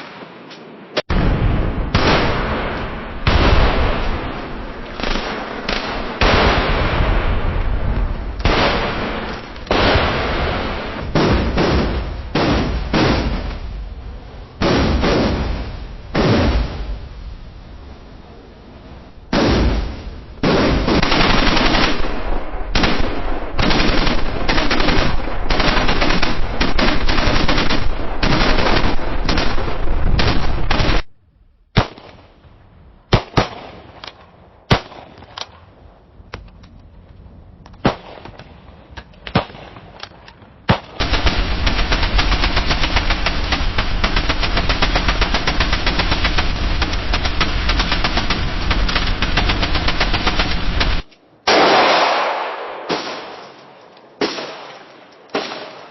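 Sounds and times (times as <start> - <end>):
automatic gunfire: 22.8 - 29.6, 40.7 - 52.6
single gunshots: 31.7 - 32.3, 37.8 - 38.4, 47.2 - 55.9.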